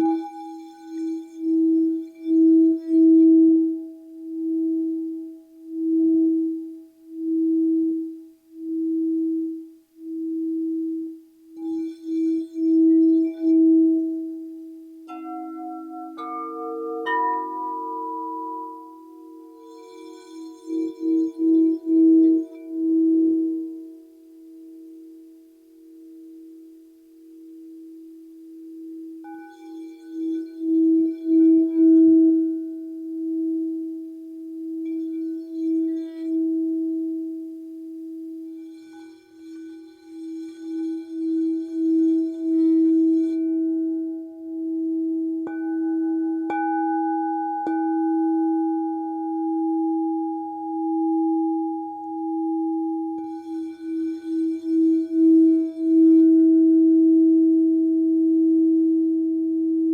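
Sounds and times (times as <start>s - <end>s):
crystal singing bowls ringing: 0.0s - 8.0s, 8.6s - 24.2s, 29.2s - 37.5s, 38.1s - 58.8s
singing bowl struck: 15.1s - 22.2s.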